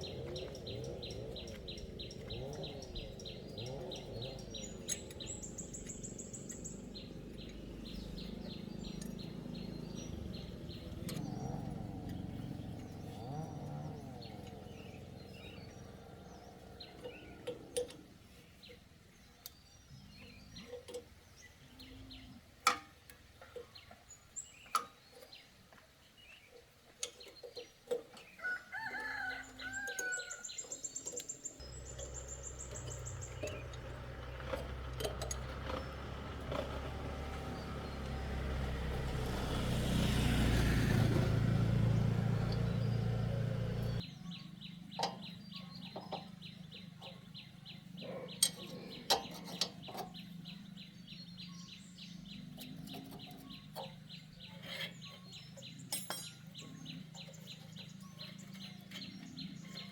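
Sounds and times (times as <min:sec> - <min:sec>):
chickens calling: 0:00.0 - 0:19.1, 0:27.2 - 0:55.9
rapid bird chirping: 0:00.0 - 0:22.3, 0:29.0 - 0:59.9.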